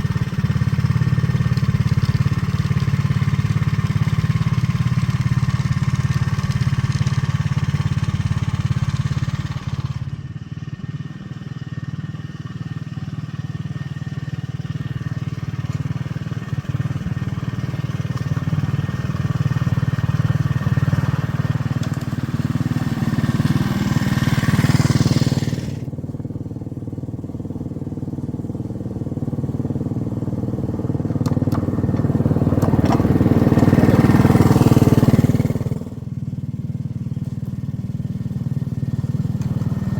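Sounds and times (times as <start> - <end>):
small train engine running: 0.0 - 10.3, 12.1 - 25.9, 37.1 - 39.9.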